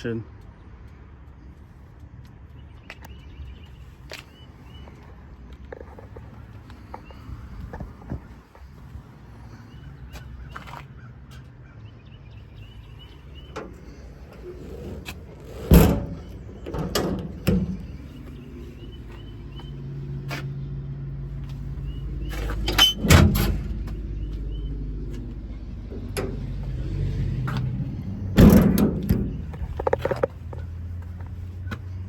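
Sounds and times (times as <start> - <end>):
truck doors clanking shut: 13.0 - 19.2, 21.6 - 30.6
low steady rumble: 13.2 - 31.6.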